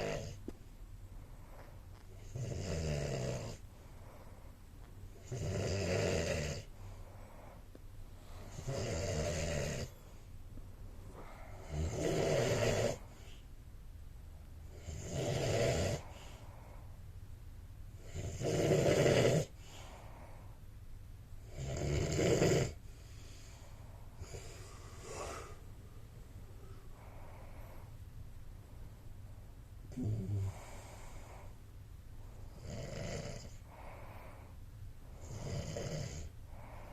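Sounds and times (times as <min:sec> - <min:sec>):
man snoring: 0:00.0 - 0:00.4, 0:02.2 - 0:03.6, 0:05.2 - 0:06.7, 0:08.4 - 0:09.9, 0:11.5 - 0:13.2, 0:14.7 - 0:16.2, 0:18.0 - 0:19.5, 0:21.4 - 0:22.8, 0:24.2 - 0:25.6, 0:29.9 - 0:31.4, 0:32.5 - 0:34.0, 0:35.2 - 0:36.3.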